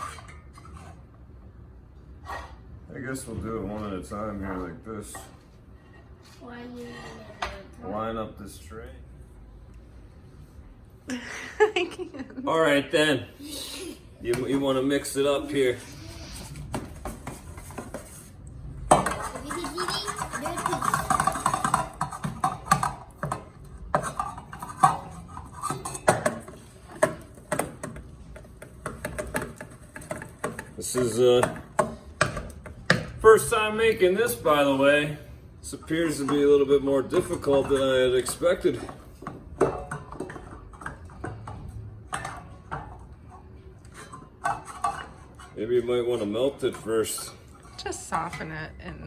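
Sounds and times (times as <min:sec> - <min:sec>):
utensil scraping a bowl: 0:00.0 - 0:01.1, 0:14.7 - 0:33.0, 0:42.2 - 0:48.5.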